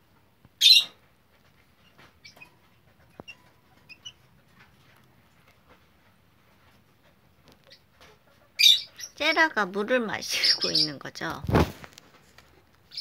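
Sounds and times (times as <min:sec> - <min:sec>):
chick peeping: 0:01.7 - 0:05.0.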